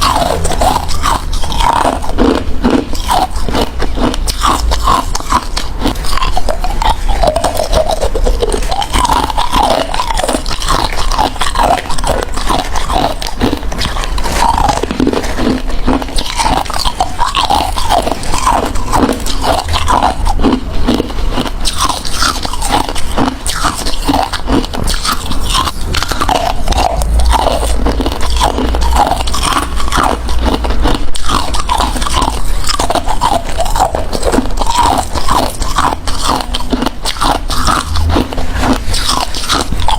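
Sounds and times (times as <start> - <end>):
ice being chewed: 0.0 - 39.9.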